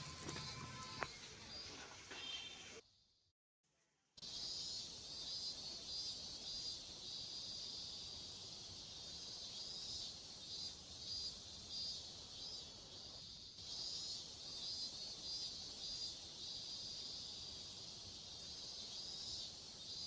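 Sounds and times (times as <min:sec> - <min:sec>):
crickets chirping: 0:00.0 - 0:02.8, 0:04.3 - 0:20.0.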